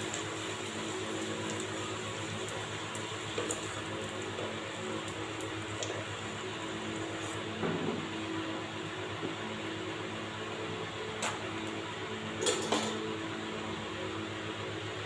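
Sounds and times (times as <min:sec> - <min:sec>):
cooking hiss: 0:00.0 - 0:08.4.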